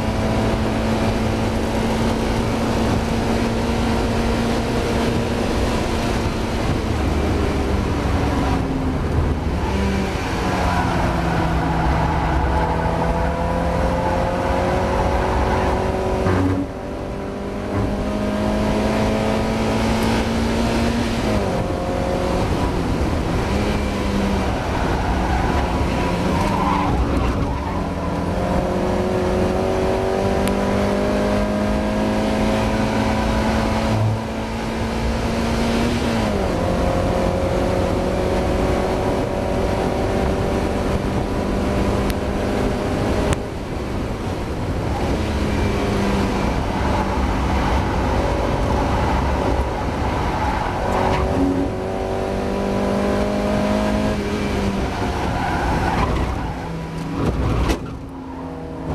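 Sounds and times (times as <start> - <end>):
race car engine at full throttle: 0.0 - 58.9.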